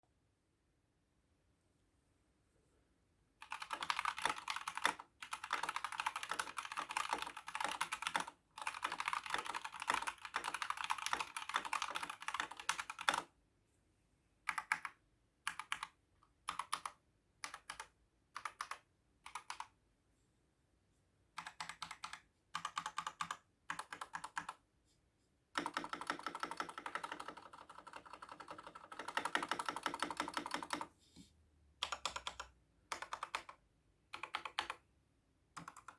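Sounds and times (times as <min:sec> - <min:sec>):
mechanical keyboard typing: 0:03.4 - 0:13.3, 0:14.5 - 0:19.7, 0:21.4 - 0:24.6, 0:25.6 - 0:30.9, 0:31.8 - 0:34.8, 0:35.6 - 0:35.9.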